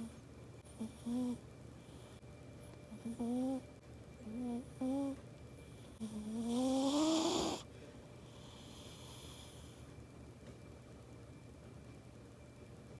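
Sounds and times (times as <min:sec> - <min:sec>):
cat snoring: 0:00.0 - 0:02.2, 0:02.9 - 0:03.7, 0:04.3 - 0:07.7, 0:08.3 - 0:09.8.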